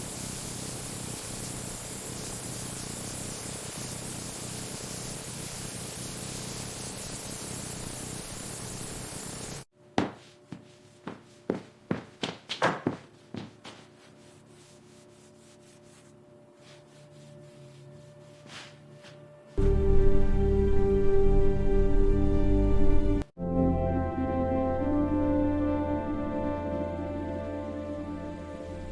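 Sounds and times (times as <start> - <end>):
steady hiss: 0.0 - 9.7
music: 16.1 - 28.9.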